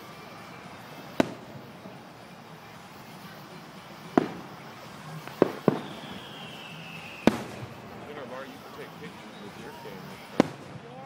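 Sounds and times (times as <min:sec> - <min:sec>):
fireworks bangs with echo: 0:00.0 - 0:11.0
firework whistle sliding down: 0:05.4 - 0:07.8.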